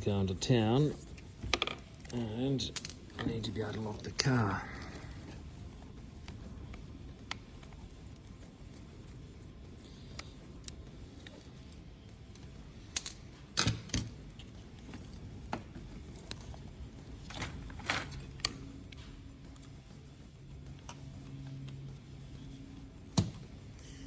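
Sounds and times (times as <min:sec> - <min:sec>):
latch parts clattering: 0:17.2 - 0:18.6.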